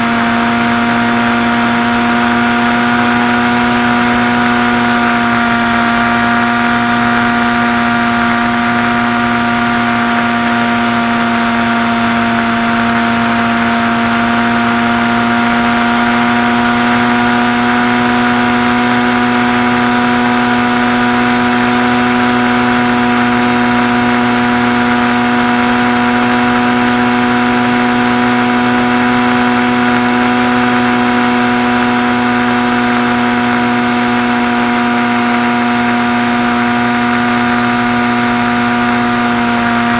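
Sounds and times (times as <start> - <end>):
model plane motor humming: 0.0 - 39.9.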